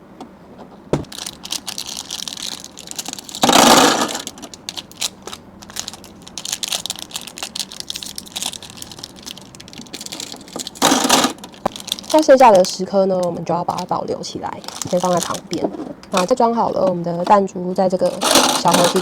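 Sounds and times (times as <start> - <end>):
marbles clicking and clattering: 1.2 - 13.3.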